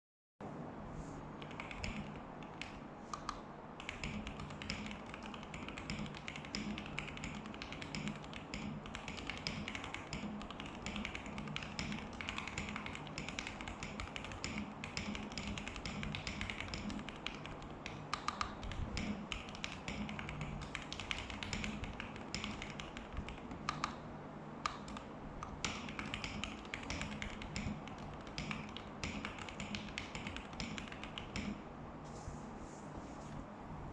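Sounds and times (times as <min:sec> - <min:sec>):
mechanical keyboard typing: 0:01.4 - 0:24.0, 0:24.7 - 0:31.6.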